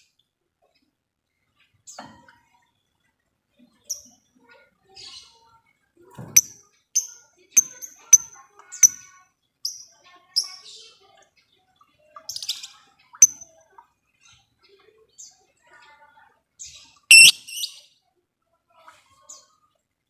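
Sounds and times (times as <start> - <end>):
lovebirds chirping: 17.1 - 17.7.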